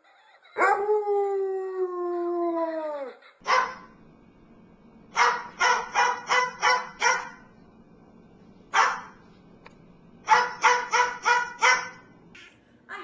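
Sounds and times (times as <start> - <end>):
dog barking: 3.4 - 3.9, 5.2 - 7.5, 8.7 - 9.2, 10.3 - 12.1.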